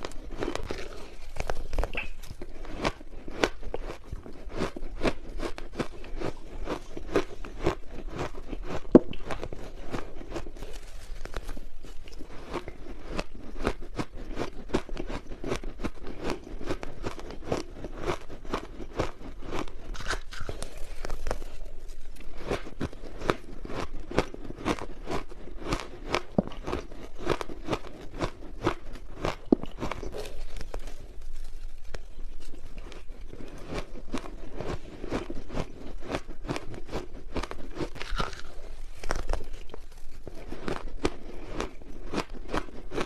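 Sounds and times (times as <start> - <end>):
ice being chewed: 0.0 - 43.0.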